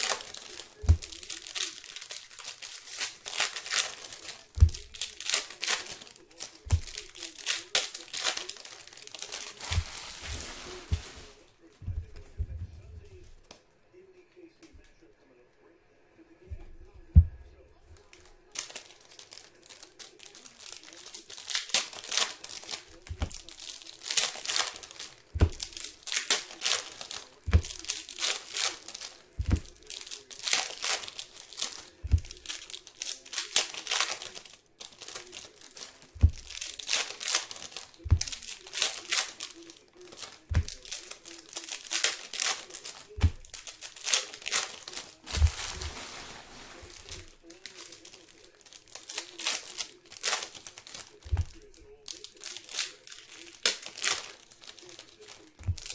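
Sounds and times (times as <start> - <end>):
plastic wrappers crinkling: 0.0 - 13.6, 16.4 - 55.9
soft low thumps: 9.7 - 13.4, 16.5 - 17.8, 45.3 - 47.1.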